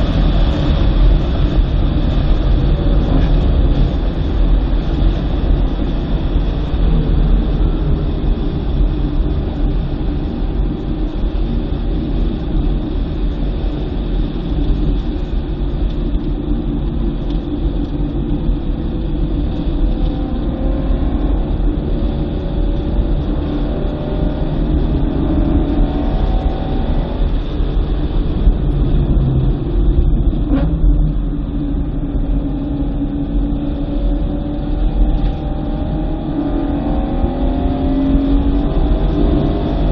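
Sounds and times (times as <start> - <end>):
car engine revving: 0.0 - 31.9, 33.3 - 39.9
road and tyre noise: 0.0 - 39.9.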